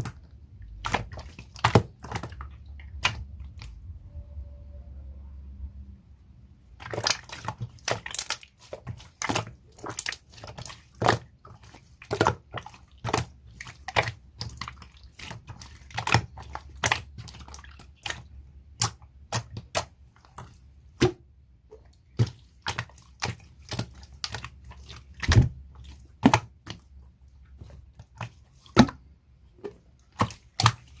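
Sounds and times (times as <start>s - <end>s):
slime clicking and popping: 12.1s - 21.1s.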